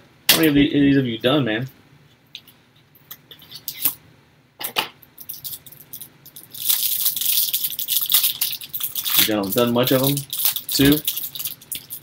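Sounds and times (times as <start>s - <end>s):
wrappers crinkling: 5.2s - 12.0s
card packs clicking and rustling: 6.4s - 12.0s.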